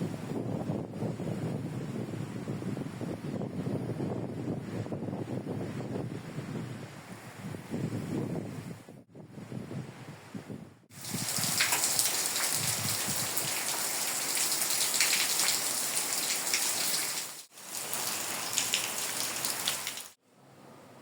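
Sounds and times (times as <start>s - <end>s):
steady rain pattering: 11.0s - 20.2s.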